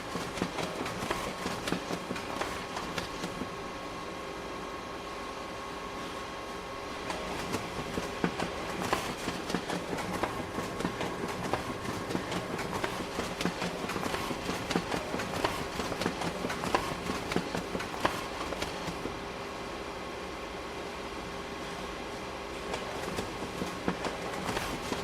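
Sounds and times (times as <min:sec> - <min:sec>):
printer clicking and clacking: 0:00.0 - 0:03.5, 0:07.0 - 0:19.2, 0:22.7 - 0:25.0
printer running hum: 0:00.0 - 0:25.0.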